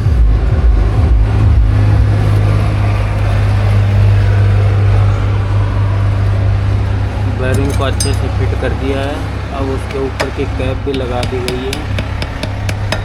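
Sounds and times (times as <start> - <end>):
low mechanical hum: 0.0 - 13.0
knocks and clatter: 9.8 - 13.0.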